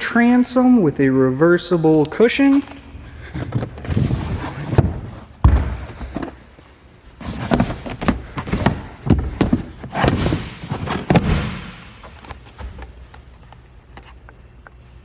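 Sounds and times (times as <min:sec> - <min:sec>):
thumps and knocks: 0:07.3 - 0:12.8.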